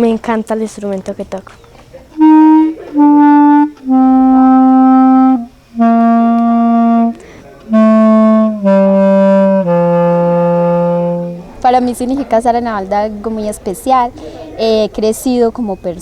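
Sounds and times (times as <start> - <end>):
wind instrument descending scale: 2.2 - 11.6.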